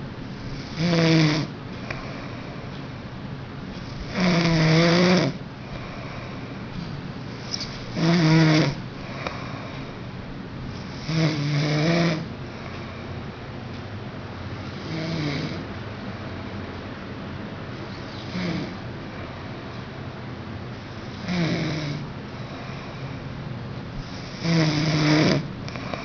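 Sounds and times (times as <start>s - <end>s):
man snoring: 0.4s - 1.5s, 3.8s - 6.2s, 7.9s - 9.7s, 10.8s - 12.3s, 14.7s - 15.7s, 18.2s - 18.8s, 21.0s - 22.9s, 24.0s - 26.0s.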